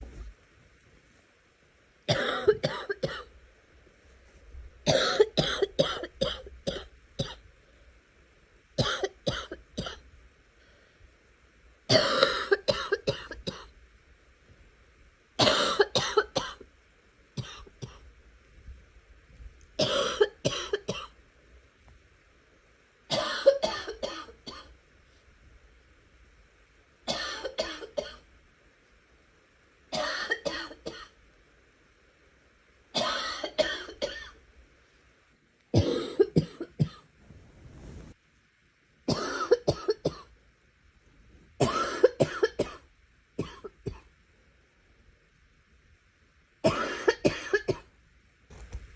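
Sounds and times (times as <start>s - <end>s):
person coughing harshly: 2.1s - 3.3s, 4.9s - 7.4s, 11.9s - 13.7s, 15.4s - 16.6s, 19.8s - 21.1s, 23.1s - 24.7s, 27.1s - 28.2s, 29.9s - 31.1s, 33.0s - 34.4s, 35.8s - 37.0s, 39.1s - 40.3s, 41.6s - 42.8s, 43.4s - 44.1s, 46.6s - 47.9s.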